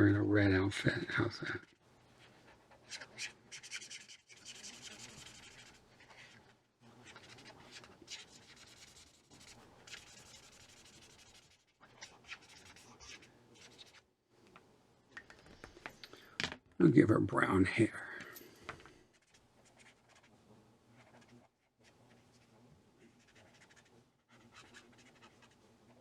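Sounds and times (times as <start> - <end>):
marker scratching on paper: 1.6 - 14.1, 19.1 - 20.3, 20.9 - 26.0.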